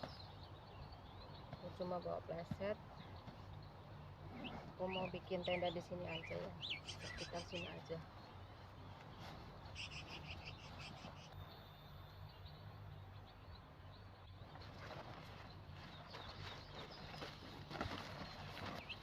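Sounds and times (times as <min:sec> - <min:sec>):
bird chirping: 0:00.0 - 0:19.0
rustling and footsteps on forest floor: 0:04.4 - 0:11.2, 0:14.5 - 0:19.0.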